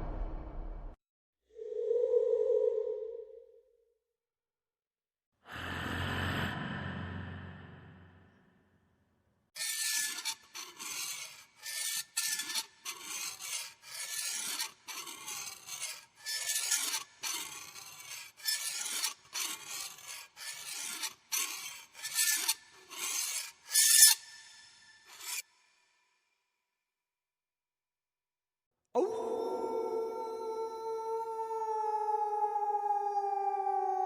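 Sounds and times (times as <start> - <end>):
uneven rasping scratches: 9.6 - 25.6.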